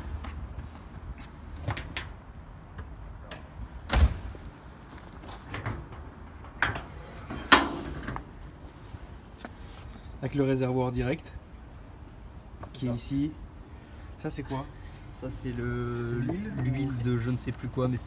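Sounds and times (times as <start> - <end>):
metal lid and latch clunks: 5.5 - 8.4.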